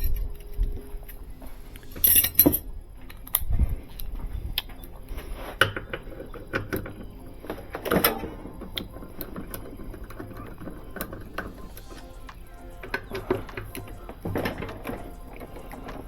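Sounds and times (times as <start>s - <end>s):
metal tools clinking on metal: 1.8s - 3.4s.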